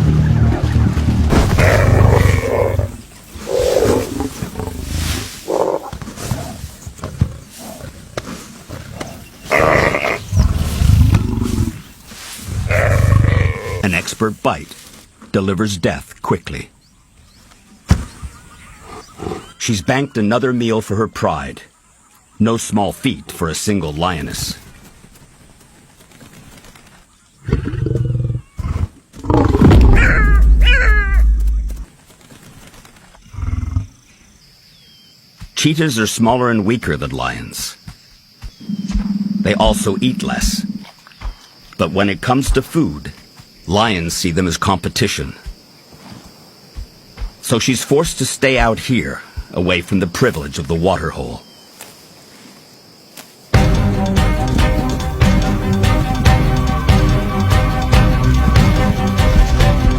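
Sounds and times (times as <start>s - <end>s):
lion growling: 0.0s - 13.9s, 27.4s - 31.9s, 33.2s - 34.0s, 38.6s - 41.0s.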